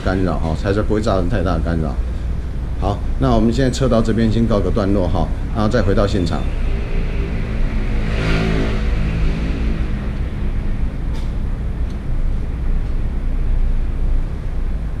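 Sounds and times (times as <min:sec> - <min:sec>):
road traffic rumble: 0:00.0 - 0:15.0
vehicle engine passing by: 0:05.6 - 0:14.4.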